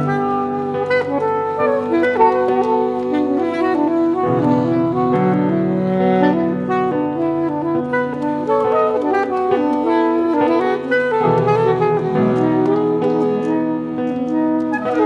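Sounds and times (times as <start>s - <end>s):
saxophone held notes: 0.0s - 15.0s.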